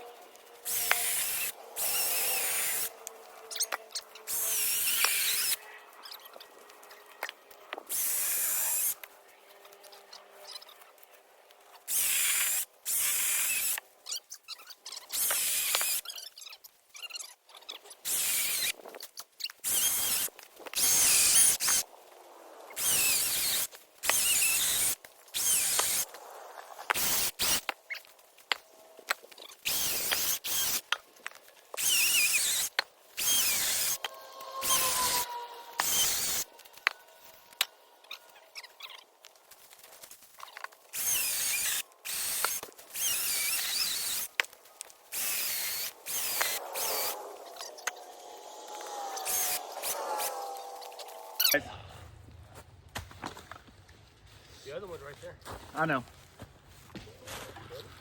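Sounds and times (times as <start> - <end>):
power tool whining bursts: 0.6 - 5.6, 22.8 - 26.2, 31.8 - 37.7, 40.9 - 44.3, 45.1 - 51.5.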